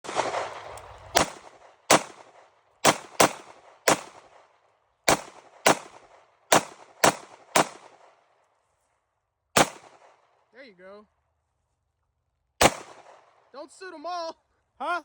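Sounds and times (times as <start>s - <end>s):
pistol shots with echo: 0.0s - 8.2s, 9.6s - 10.3s, 12.6s - 13.4s.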